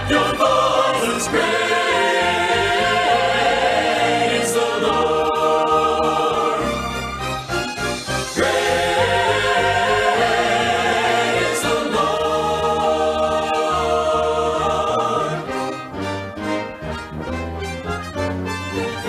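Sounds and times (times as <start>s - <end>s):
gospel vocal group singing: 0.0s - 7.1s, 8.1s - 15.8s
instrumental backing: 0.0s - 19.0s.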